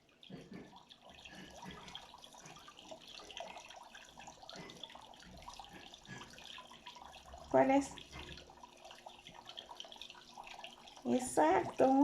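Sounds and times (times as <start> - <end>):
water fountain splashing: 0.0 - 12.0.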